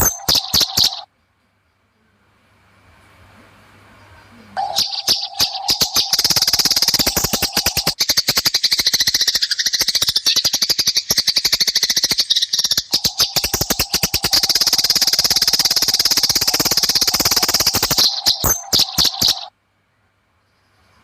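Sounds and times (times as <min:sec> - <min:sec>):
sparrows chirping harshly: 0:00.0 - 0:02.2, 0:03.9 - 0:19.5.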